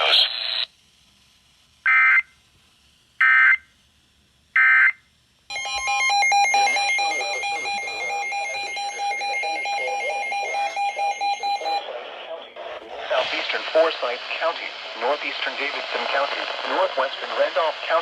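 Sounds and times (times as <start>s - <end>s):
harsh digital data bursts: 5.5s - 11.8s
loud alert tone: 5.5s - 11.8s.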